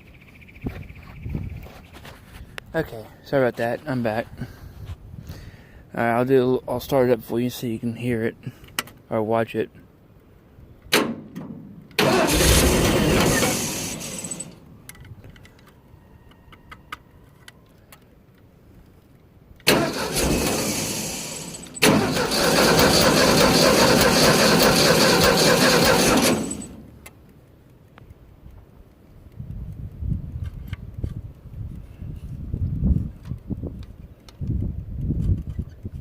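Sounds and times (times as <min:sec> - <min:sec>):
engine cranked by starter: 0:12.0 - 0:14.6, 0:19.7 - 0:26.9.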